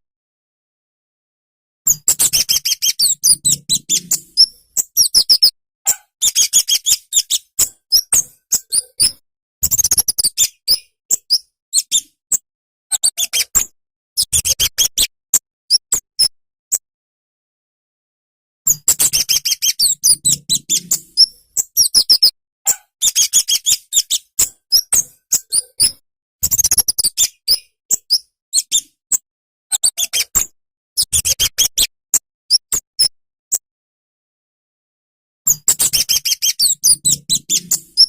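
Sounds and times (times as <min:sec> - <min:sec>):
bird twittering chirps: 0:01.9 - 0:05.5, 0:06.2 - 0:12.1, 0:18.7 - 0:22.3, 0:23.0 - 0:28.9, 0:35.5 - 0:38.0.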